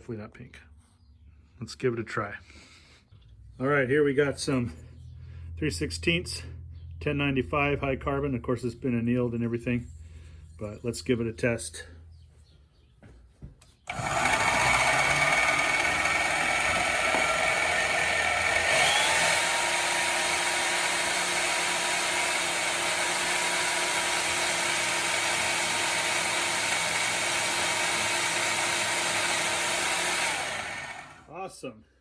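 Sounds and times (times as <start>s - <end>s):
bandsaw cutting steel: 13.9s - 31.3s.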